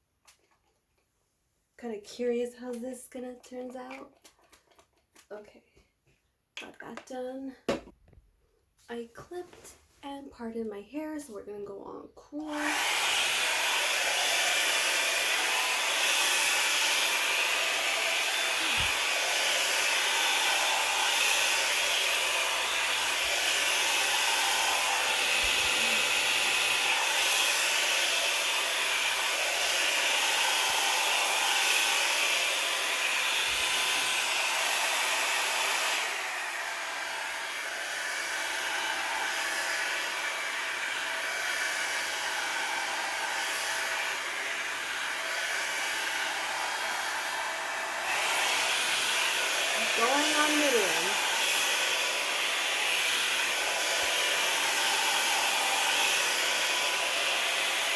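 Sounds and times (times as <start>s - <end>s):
blow dryer blowing: 12.4s - 57.9s.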